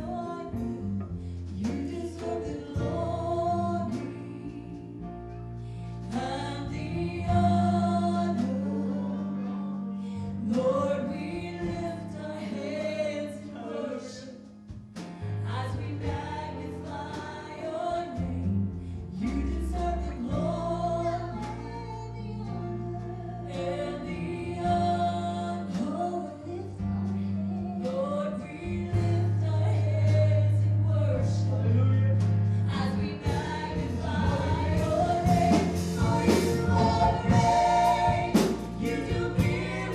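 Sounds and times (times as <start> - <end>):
band playing worship music: 0.0 - 39.9
voices singing: 6.1 - 14.5, 32.7 - 39.9
long held bass notes: 18.0 - 39.9.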